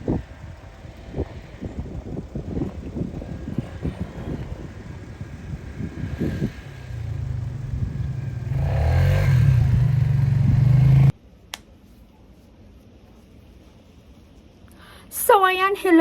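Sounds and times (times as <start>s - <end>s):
atv engine running: 0.0s - 11.1s
wind buffeting microphone: 0.0s - 11.1s.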